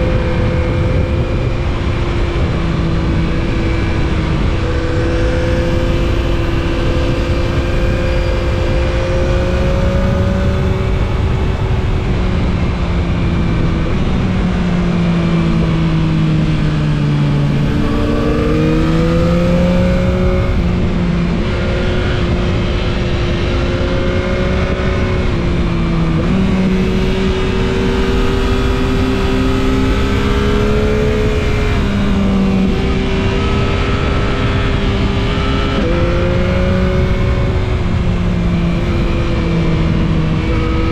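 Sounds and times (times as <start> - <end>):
motorcycle engine riding: 0.0 - 40.9
wind and road rush: 0.0 - 40.9.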